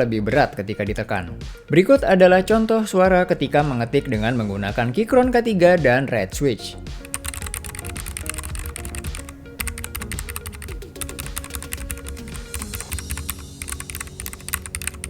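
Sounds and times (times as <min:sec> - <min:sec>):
fast mechanical keyboard typing: 0:07.0 - 0:15.0.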